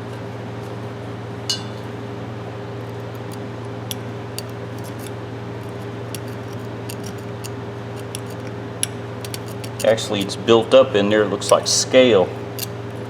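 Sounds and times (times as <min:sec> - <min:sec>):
steady background hum: 0:00.0 - 0:13.0
metal wrench clicking: 0:02.9 - 0:10.4, 0:11.4 - 0:11.8, 0:12.4 - 0:13.0.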